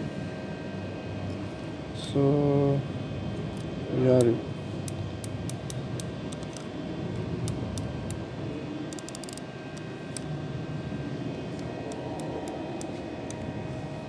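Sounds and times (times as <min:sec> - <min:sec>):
steady low hum: 0:00.0 - 0:14.0
cable tie gun clicks: 0:08.9 - 0:09.4, 0:11.9 - 0:13.5.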